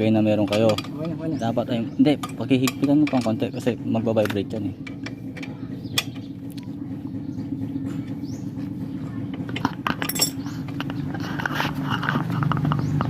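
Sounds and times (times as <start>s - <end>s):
steady low hum: 0.0s - 13.0s
wrench clinking on metal bolts: 2.2s - 3.4s, 9.5s - 10.5s.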